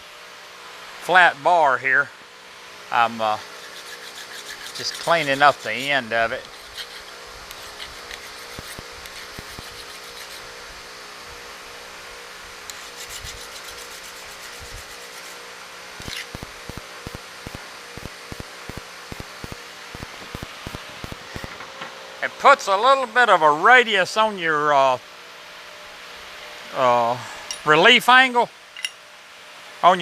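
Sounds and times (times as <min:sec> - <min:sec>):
steady rasping of honing bar: 0:03.5 - 0:10.4.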